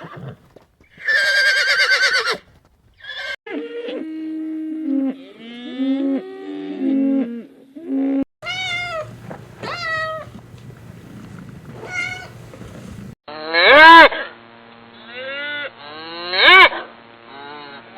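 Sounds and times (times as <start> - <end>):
cats meowing: 8.4 - 13.2.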